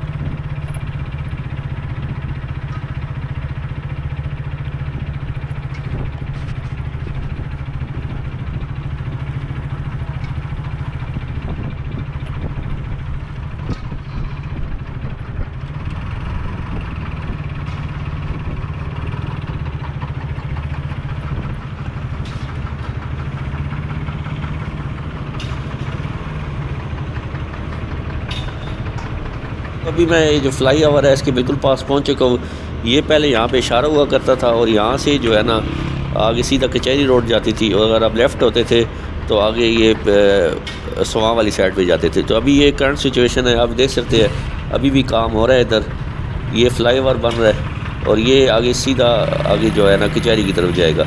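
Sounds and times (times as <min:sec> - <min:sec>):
motorcycle engine running: 0:00.0 - 0:51.0.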